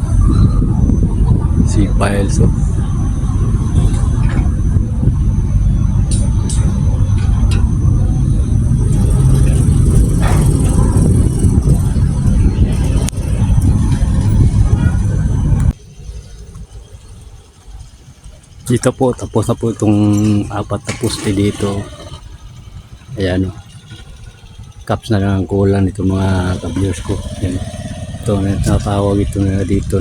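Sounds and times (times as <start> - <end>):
loud low rumble: 0.0 - 15.8, 18.8 - 30.0.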